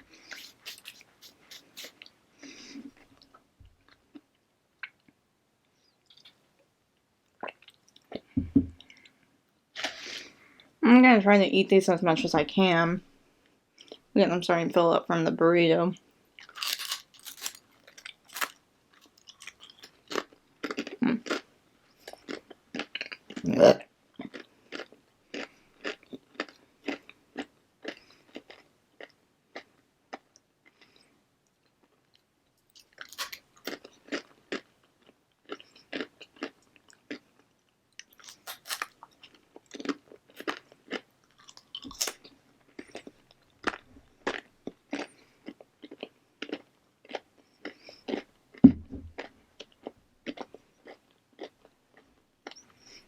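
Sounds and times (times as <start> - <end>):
person chewing crunchy chips: 0.1 - 3.3, 16.4 - 23.5, 24.2 - 31.0, 32.7 - 48.3, 49.2 - 53.0.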